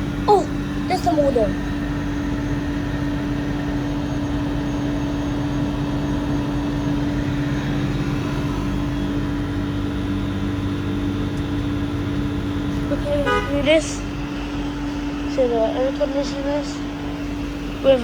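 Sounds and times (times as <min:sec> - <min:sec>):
air-conditioner units humming: 0:00.0 - 0:18.0.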